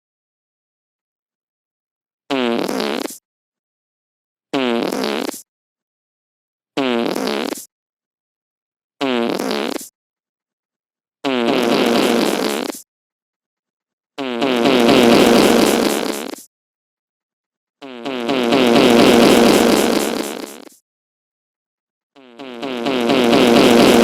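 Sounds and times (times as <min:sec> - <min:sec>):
fart sound effect: 0:02.3 - 0:03.2, 0:04.6 - 0:05.5, 0:06.8 - 0:07.7, 0:09.0 - 0:09.9, 0:11.2 - 0:12.8, 0:14.2 - 0:16.5, 0:17.8 - 0:20.8, 0:22.2 - 0:24.0.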